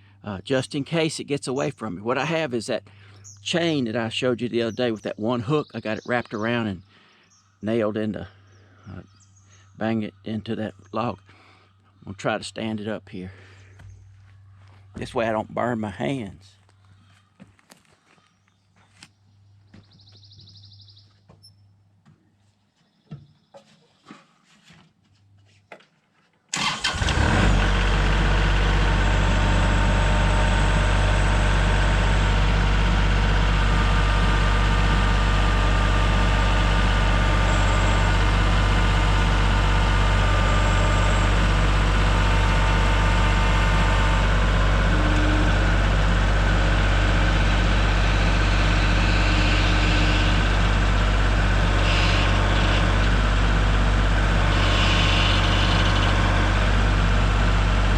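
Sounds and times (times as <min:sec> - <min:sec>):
tractor engine starting and idling: 0:26.5 - 0:57.9.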